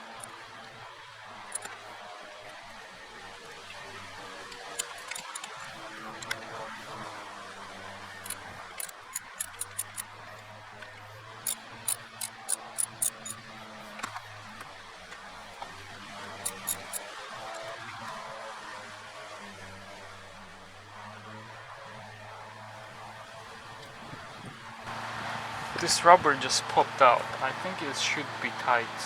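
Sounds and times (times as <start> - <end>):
metallic clicks of hand tools: 0.1 - 0.3, 1.4 - 1.8, 4.6 - 5.6, 8.2 - 10.2, 11.4 - 13.4, 16.4 - 17.0.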